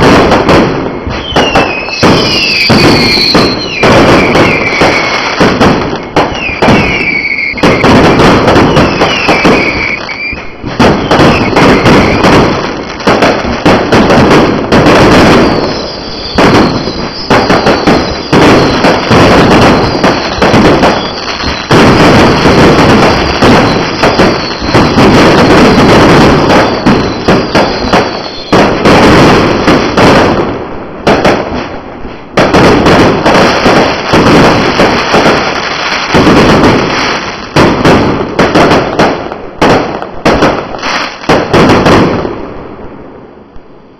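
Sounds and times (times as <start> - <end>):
fireworks bangs and crackle: 0.0 - 43.9
firework falling whistles: 0.8 - 14.1, 14.9 - 30.1.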